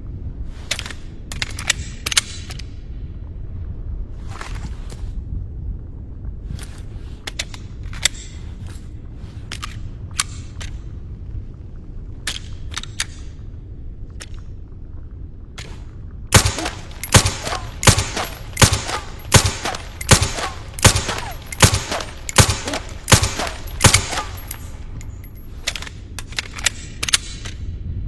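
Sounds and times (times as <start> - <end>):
suppressed pistol shots: 16.3 - 24.8.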